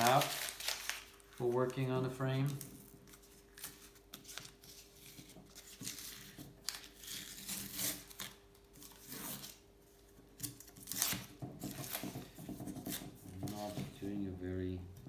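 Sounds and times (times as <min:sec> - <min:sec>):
paper crinkling: 0:00.0 - 0:09.6, 0:10.4 - 0:14.6
tape being pulled and torn: 0:10.4 - 0:12.0.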